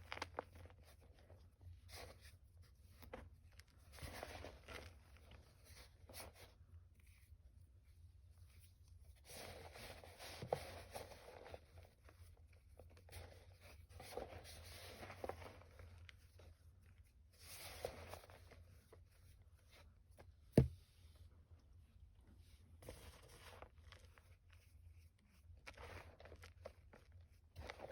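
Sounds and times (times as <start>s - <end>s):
chalk crumbling and crunching: 22.8s - 27.9s.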